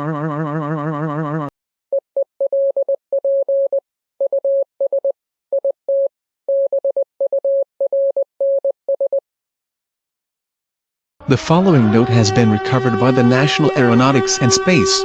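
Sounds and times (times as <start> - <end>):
morse code electronic beeps: 1.9 - 9.2.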